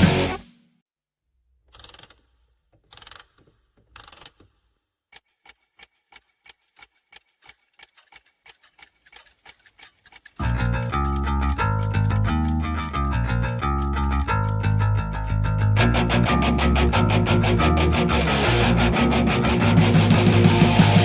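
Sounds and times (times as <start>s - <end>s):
clock ticking: 2.8s - 15.8s.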